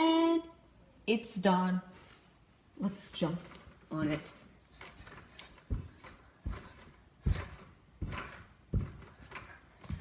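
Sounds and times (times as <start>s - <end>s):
thuds of bouncing on a trampoline: 4.8s - 10.0s.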